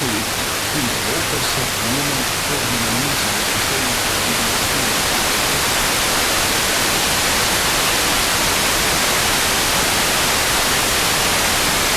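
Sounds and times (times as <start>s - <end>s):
radio static hiss: 0.0s - 6.5s.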